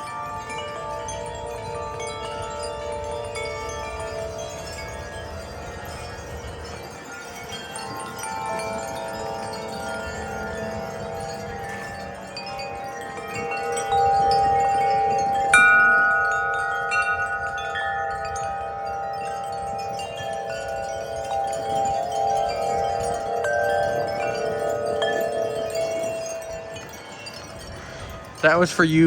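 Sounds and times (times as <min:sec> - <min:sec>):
metal wind chimes ringing: 0:00.0 - 0:29.0.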